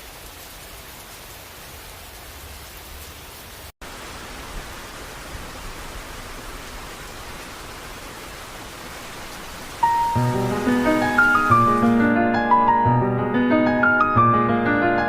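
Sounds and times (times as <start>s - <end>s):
steady hiss: 3.9s - 12.2s.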